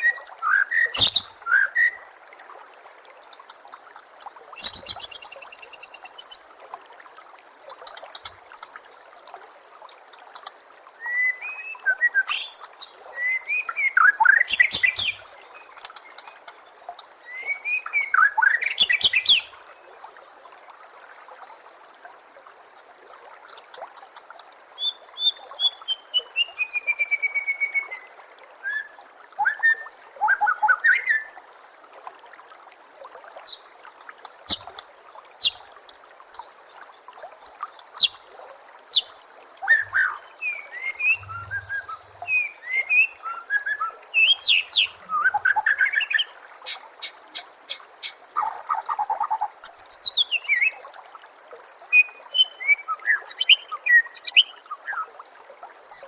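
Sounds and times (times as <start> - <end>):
songbird singing trills and whistles: 0.0 - 2.1, 4.6 - 6.5, 11.0 - 16.2, 17.2 - 19.5, 24.8 - 31.4, 38.9 - 46.8, 48.0 - 50.8, 51.9 - 55.1
trickle of running water: 0.0 - 56.0.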